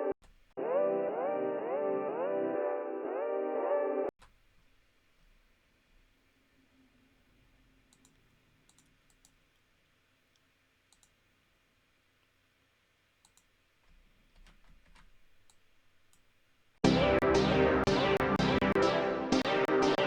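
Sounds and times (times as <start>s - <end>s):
computer mouse and keyboard clicks: 7.9s - 9.4s, 10.9s - 11.2s, 13.2s - 16.3s.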